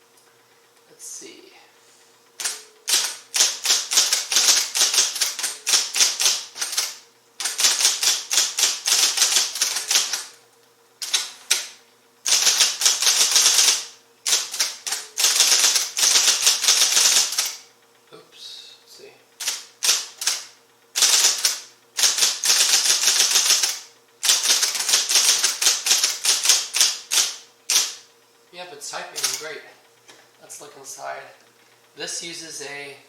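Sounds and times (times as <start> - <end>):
faint motor hum: 0.0 - 33.0
electric typewriter typing: 2.4 - 10.4, 11.0 - 17.7, 19.4 - 28.1, 29.0 - 29.6.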